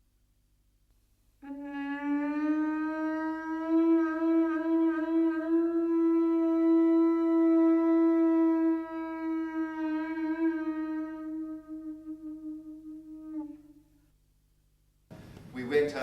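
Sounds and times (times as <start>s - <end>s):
horn-like wind instrument note: 1.4s - 13.8s.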